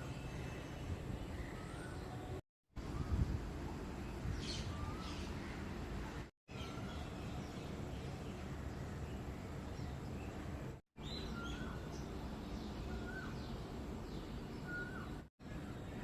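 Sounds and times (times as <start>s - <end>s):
wind rumbling on microphone: 2.8s - 6.3s.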